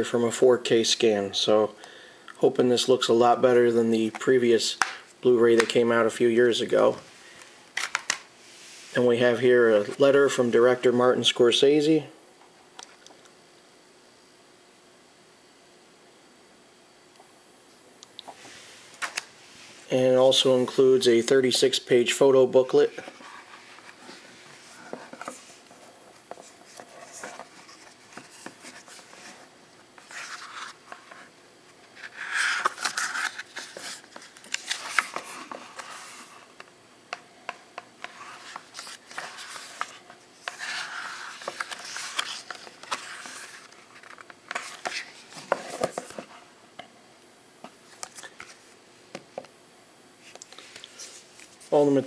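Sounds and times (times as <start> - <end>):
paper pages turning: 23.0 - 31.3, 31.9 - 36.5, 38.0 - 46.4
heavy paper rustling and sliding: 38.1 - 46.3.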